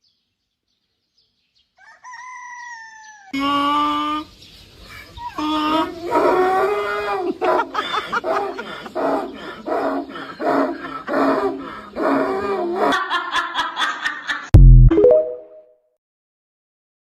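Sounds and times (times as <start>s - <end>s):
person imitating animal calls: 3.4s - 4.3s, 5.2s - 13.0s.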